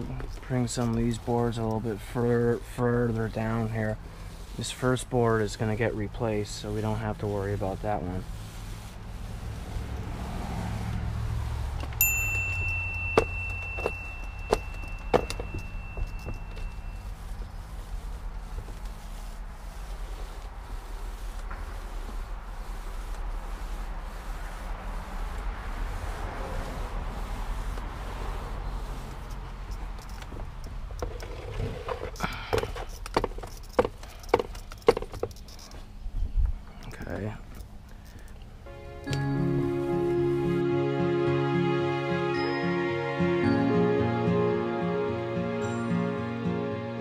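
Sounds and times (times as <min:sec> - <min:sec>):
metallic ding ringing: 0:12.0 - 0:17.0
sharp knocks and clicks: 0:29.3 - 0:35.5.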